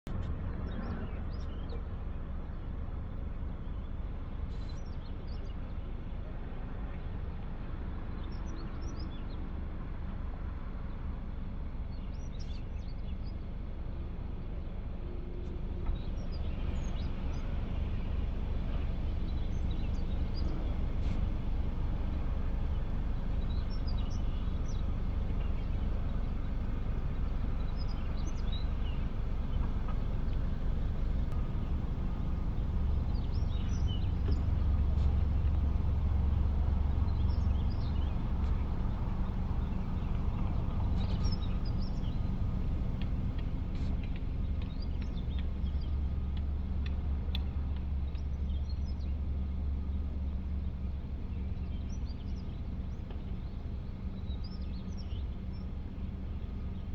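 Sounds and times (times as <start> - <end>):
low seashore rumble: 15.9 - 47.7.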